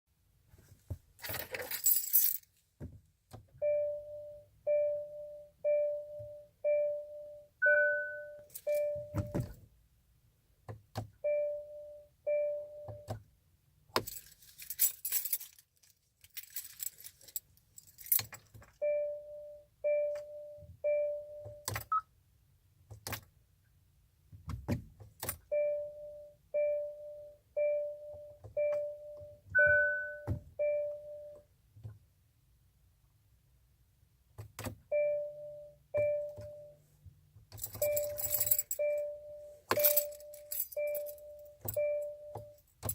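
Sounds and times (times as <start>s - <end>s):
keys jangling: 1.2s - 2.5s, 8.5s - 9.4s, 14.0s - 18.6s, 37.5s - 38.9s, 39.7s - 41.8s
car warning chime beeping: 3.6s - 9.4s, 11.2s - 13.1s, 18.8s - 22.1s, 25.5s - 31.5s, 34.9s - 36.9s, 37.7s - 42.9s.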